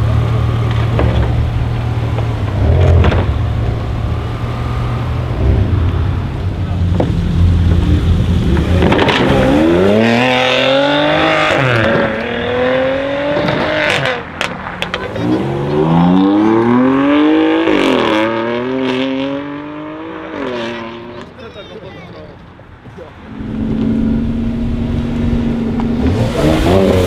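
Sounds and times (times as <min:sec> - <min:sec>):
car engine accelerating hard: 0:00.0 - 0:21.3, 0:23.3 - 0:27.0
exhaust crackles and pops: 0:00.1 - 0:04.4, 0:05.4 - 0:09.8, 0:13.3 - 0:15.4, 0:23.4 - 0:27.0.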